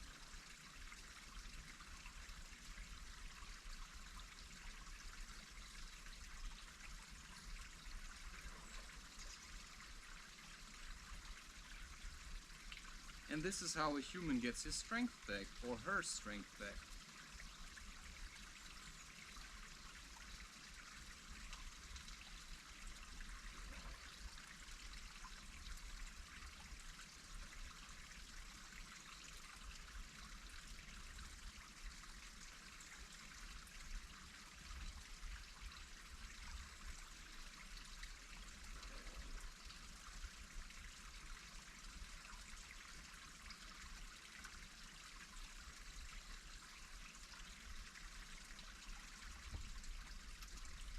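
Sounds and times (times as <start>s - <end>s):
running water rushing: 0.0s - 50.9s.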